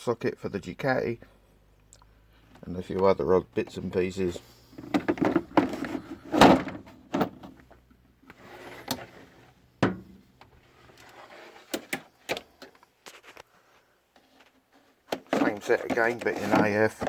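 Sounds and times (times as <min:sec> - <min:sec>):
tools sliding and rustling: 0:04.2 - 0:09.7, 0:10.5 - 0:17.0.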